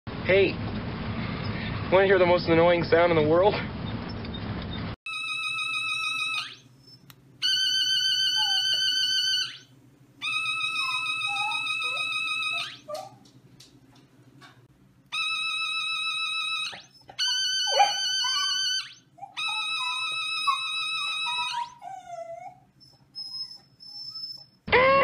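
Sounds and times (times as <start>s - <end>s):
toy high electronic tone: 5.1s - 6.6s, 7.4s - 9.6s, 17.2s - 21.6s
dog whimpering: 8.0s - 9.6s, 10.2s - 13.2s, 15.2s - 25.0s.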